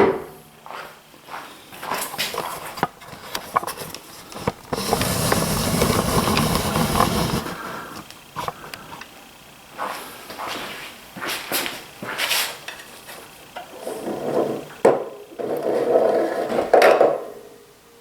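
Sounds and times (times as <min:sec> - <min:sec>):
steady rushing hiss: 0:02.5 - 0:13.6.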